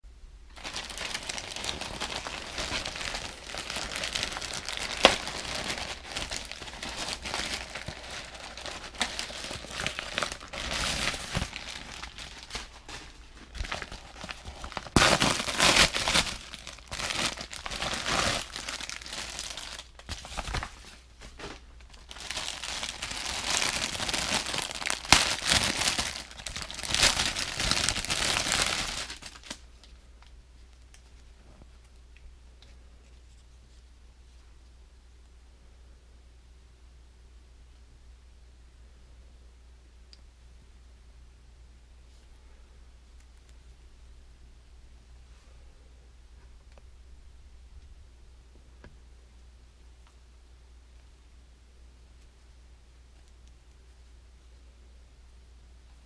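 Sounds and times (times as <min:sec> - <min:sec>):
packaging crinkling: 0:00.5 - 0:30.3.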